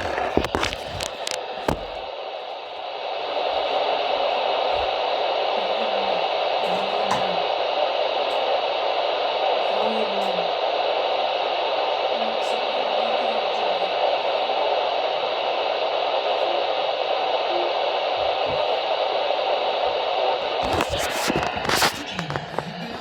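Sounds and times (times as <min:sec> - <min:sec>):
radio static hiss: 0:00.0 - 0:23.0.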